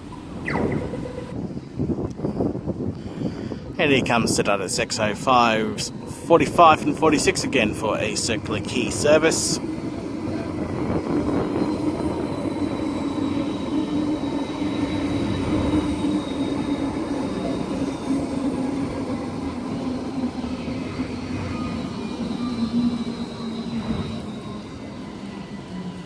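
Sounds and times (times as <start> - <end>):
tram rolling noise: 0.0 - 26.0
tram electric motor hum: 5.5 - 26.0.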